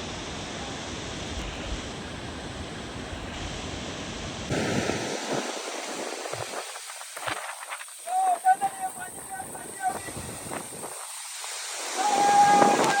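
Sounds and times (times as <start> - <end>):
waterfall roaring: 4.5 - 13.0.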